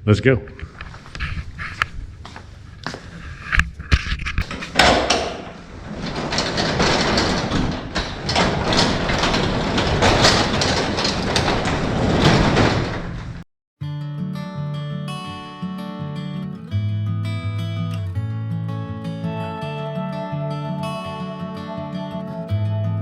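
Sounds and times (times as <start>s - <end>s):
clicks and knocks: 0.5s - 13.4s
large door sliding with rattling: 0.5s - 13.4s.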